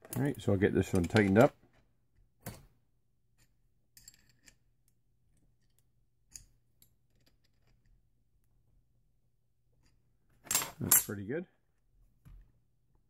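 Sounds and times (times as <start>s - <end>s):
metallic clicks and scrapes: 0.0s - 1.5s.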